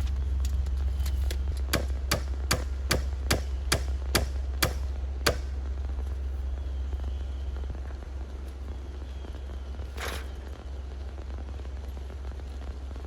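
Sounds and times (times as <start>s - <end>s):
steady low rumble: 0.0s - 13.0s
hammer blows on wood: 1.7s - 5.6s.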